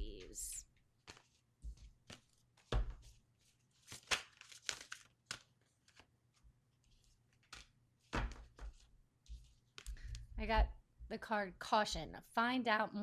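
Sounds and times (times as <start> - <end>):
cards shuffling and flicking: 1.0 - 10.2.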